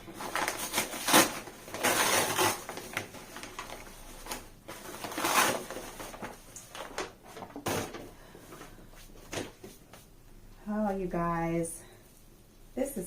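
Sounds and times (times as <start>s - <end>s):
wrapping paper rustling and crinkling: 0.0s - 10.1s.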